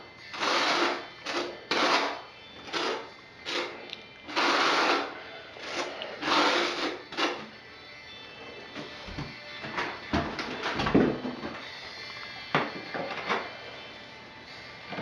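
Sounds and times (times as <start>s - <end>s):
trowel scraping mortar: 0.3s - 7.4s.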